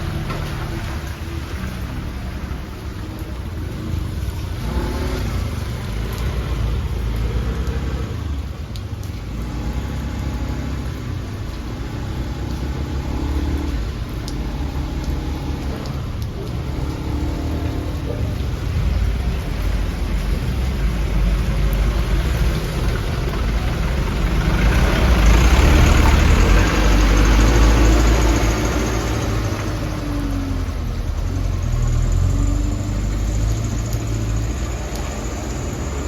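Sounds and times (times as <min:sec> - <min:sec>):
heavy rain falling: 0:00.0 - 0:36.0
raindrop clicks: 0:00.0 - 0:36.0.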